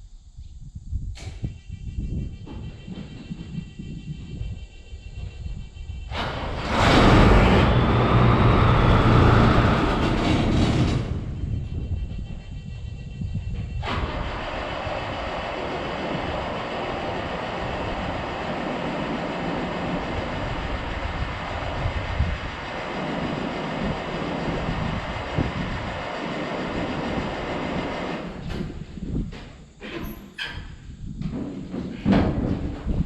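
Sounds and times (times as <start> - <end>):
farm machine rumbling and clattering: 6.2 - 12.4, 13.4 - 33.0.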